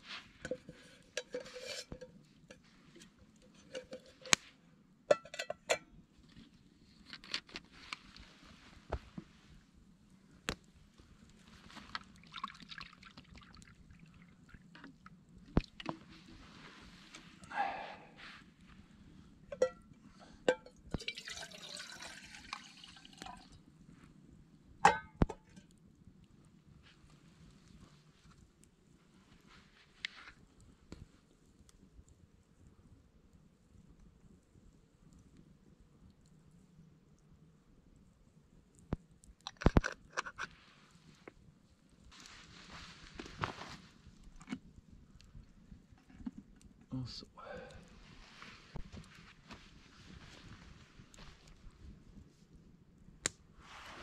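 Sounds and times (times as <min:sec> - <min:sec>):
metal cookware clinking: 0:00.4 - 0:02.2, 0:05.1 - 0:05.8
metal cookware knocking and clinking: 0:05.1 - 0:05.8, 0:24.9 - 0:25.5
water being poured: 0:11.9 - 0:16.1, 0:20.6 - 0:23.6.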